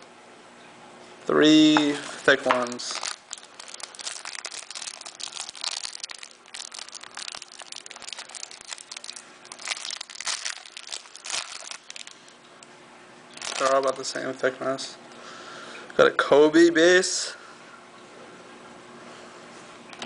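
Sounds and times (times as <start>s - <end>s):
wrappers crinkling and tearing: 1.9s - 12.4s, 13.3s - 14.2s.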